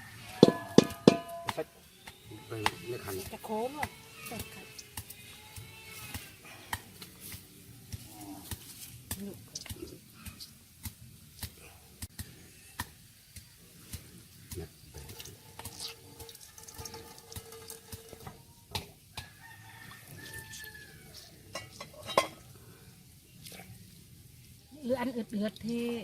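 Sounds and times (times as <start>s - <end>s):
rooster crowing faintly: 18.2s - 21.4s.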